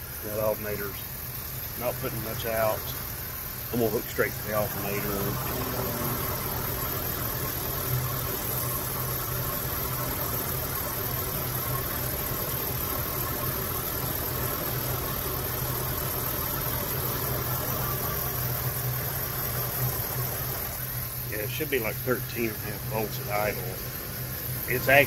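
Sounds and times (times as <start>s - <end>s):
pickup engine idling: 0.0s - 25.0s.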